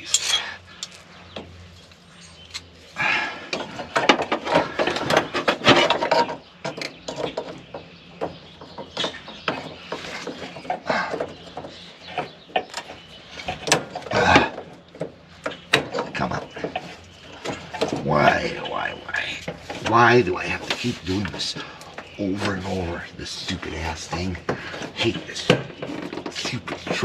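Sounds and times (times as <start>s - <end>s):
metal tools clicking and clattering: 0.0s - 1.0s.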